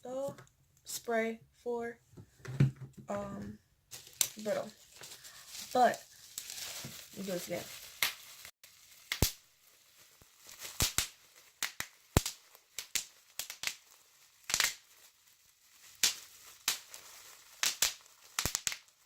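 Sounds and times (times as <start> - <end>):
packaging crinkling: 3.9 - 19.0.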